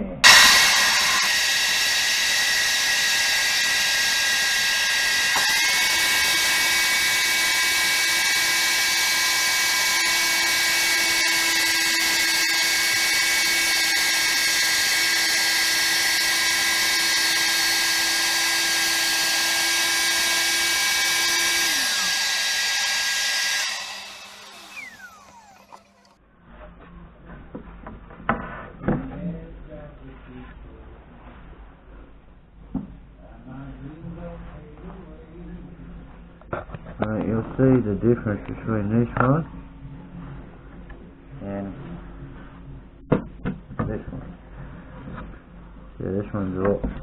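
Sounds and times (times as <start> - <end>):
saw blade spinning down: 0.2 - 26.1
power saw whining: 0.2 - 26.2.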